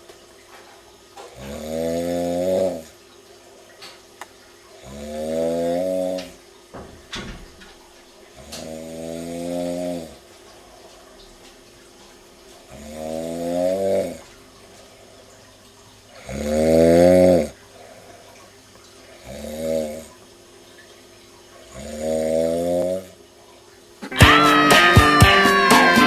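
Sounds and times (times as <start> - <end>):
loud buzzing snores: 1.3 - 3.0, 4.8 - 6.4, 8.4 - 10.2, 12.7 - 14.2, 16.1 - 18.0, 19.2 - 20.2, 21.7 - 23.2
plucked-string music: 24.0 - 26.0.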